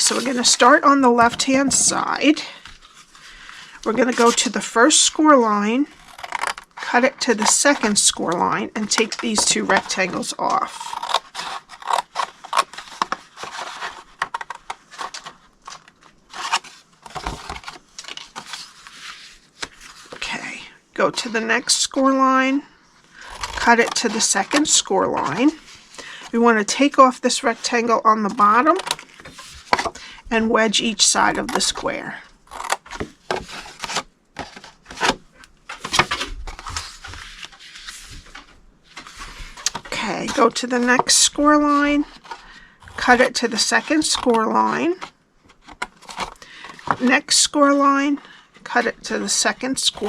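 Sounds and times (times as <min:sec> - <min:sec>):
paper rustling: 0:32.5 - 0:47.1.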